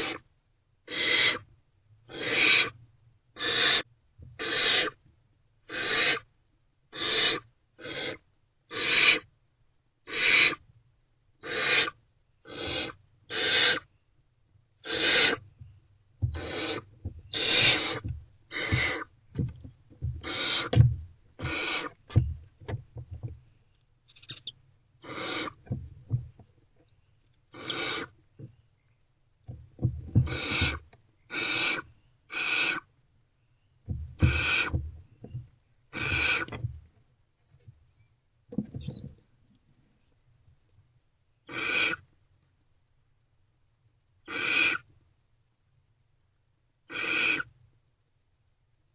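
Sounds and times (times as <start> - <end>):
owlets hissing begging calls: 0.9 - 1.4, 2.1 - 2.7, 3.4 - 3.8, 4.4 - 5.0, 5.7 - 6.2, 7.0 - 9.2, 10.1 - 10.6, 11.4 - 13.9, 14.8 - 15.4, 16.3 - 20.8, 21.4 - 22.2, 24.2 - 25.6, 27.6 - 28.2, 30.3 - 32.8, 34.2 - 34.8, 36.0 - 36.6, 41.5 - 42.0, 44.3 - 44.8, 46.9 - 47.5
rustling in nest box: 16.2 - 23.4.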